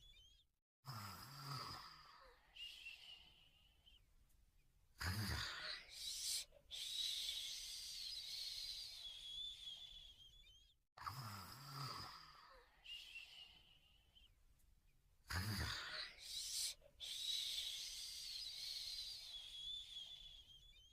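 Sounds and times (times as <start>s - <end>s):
cartoon puppy snoring: 0.8s - 2.2s, 5.0s - 5.9s, 11.0s - 12.6s, 15.3s - 16.4s
high wavering whistle: 6.7s - 10.7s, 17.0s - 20.9s.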